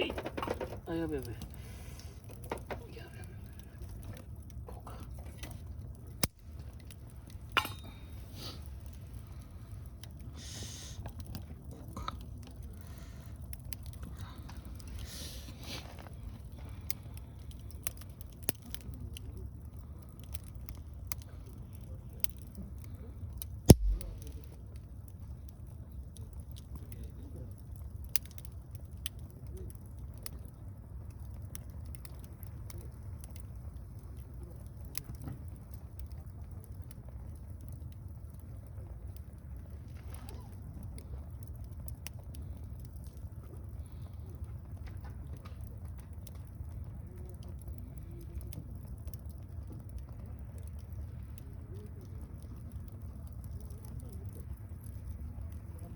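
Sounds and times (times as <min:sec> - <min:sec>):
wood fire crackling: 0:00.0 - 0:55.9
loud sharp snap: 0:23.7 - 0:24.4
low steady rumble: 0:23.7 - 0:24.7.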